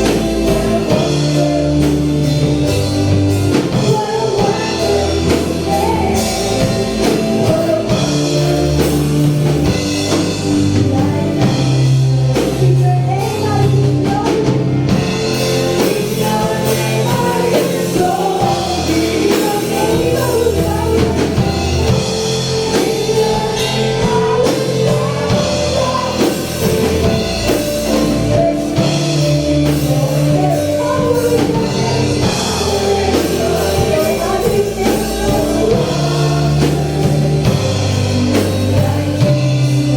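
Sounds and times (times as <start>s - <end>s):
person singing: 0.0s - 39.9s
rock band playing: 0.0s - 39.9s.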